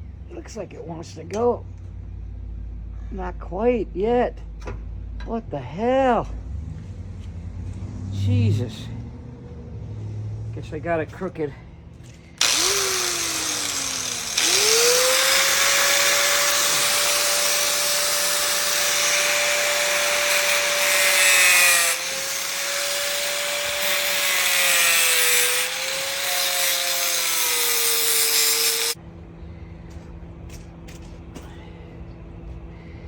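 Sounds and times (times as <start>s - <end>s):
power tool grinding metal: 12.4s - 29.0s
power tool motor whine: 12.4s - 29.0s.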